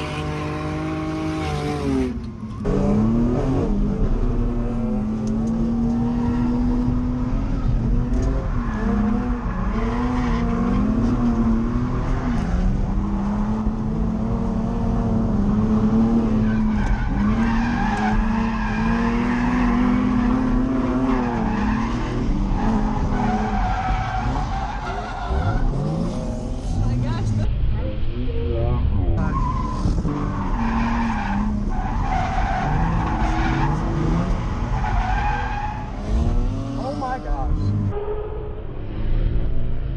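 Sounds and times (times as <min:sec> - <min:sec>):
tires skidding: 0:00.0 - 0:02.7, 0:15.0 - 0:27.0, 0:29.2 - 0:38.4
car engine revving hard: 0:32.6 - 0:37.9.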